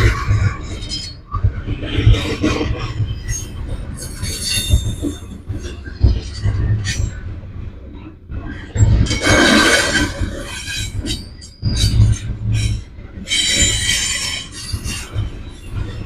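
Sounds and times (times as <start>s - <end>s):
freight train rolling past: 0.0s - 16.0s
wheel and brake squeals: 3.1s - 5.4s, 8.8s - 15.8s.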